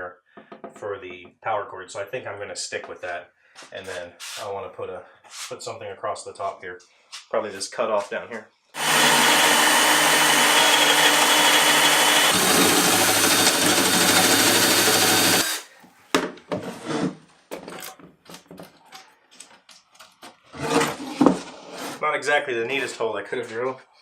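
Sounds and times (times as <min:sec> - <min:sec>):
power drill boring through wood: 0:08.8 - 0:15.7.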